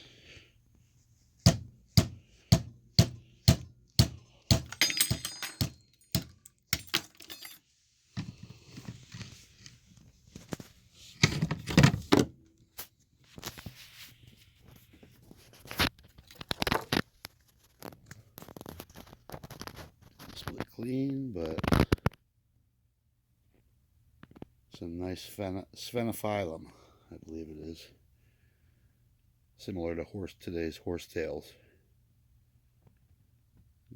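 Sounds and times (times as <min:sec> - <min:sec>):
knives and rock clattering: 0:04.0 - 0:07.6
metallic clinking: 0:04.5 - 0:07.6.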